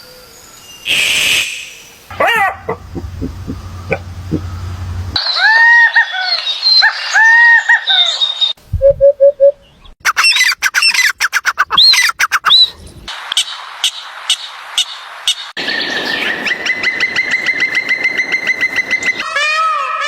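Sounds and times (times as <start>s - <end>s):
bird calls: 0.9s - 5.2s
short bird notes: 0.9s - 5.2s.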